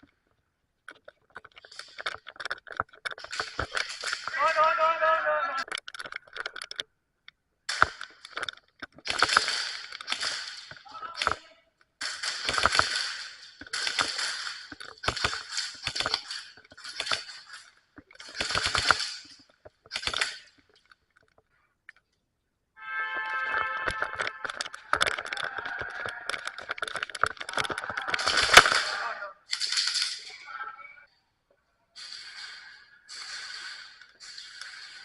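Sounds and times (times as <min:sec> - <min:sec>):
airsoft guns firing bursts: 0:09.0 - 0:11.4, 0:12.0 - 0:17.6, 0:18.2 - 0:19.3, 0:32.0 - 0:35.0.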